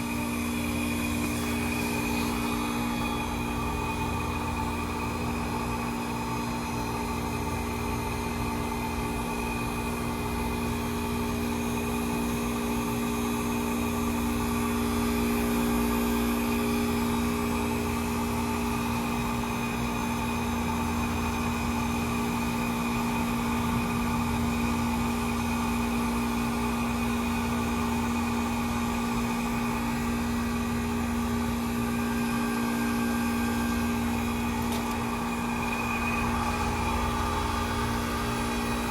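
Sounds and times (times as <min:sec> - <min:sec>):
heat pump humming: 0:00.0 - 0:38.9.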